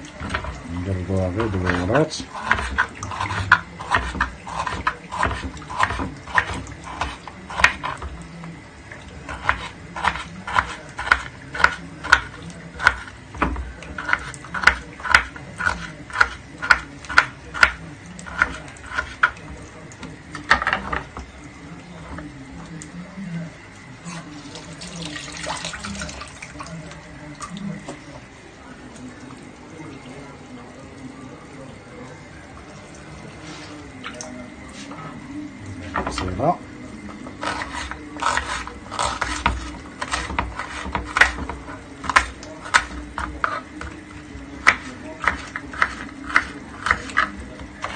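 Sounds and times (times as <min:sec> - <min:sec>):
utensil scraping a pot: 0:00.0 - 0:08.2, 0:09.2 - 0:19.5, 0:24.0 - 0:26.0, 0:37.2 - 0:47.9.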